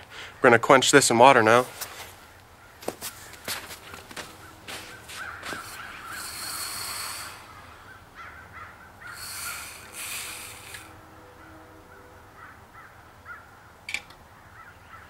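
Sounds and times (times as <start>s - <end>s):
hot metal hissing in water: 4.9s - 8.0s, 9.0s - 11.0s.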